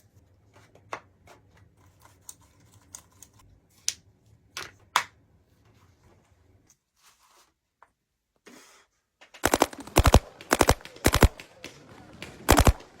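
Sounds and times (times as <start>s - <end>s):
paintball gun firing: 9.4s - 13.0s.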